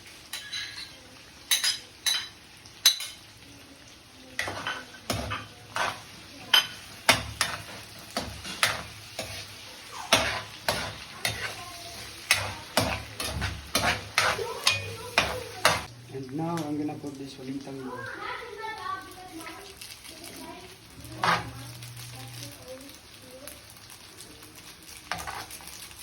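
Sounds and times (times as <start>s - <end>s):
chicken sizzling in a pan: 0.0s - 26.0s
utensil knocking and scraping pan: 4.4s - 15.9s.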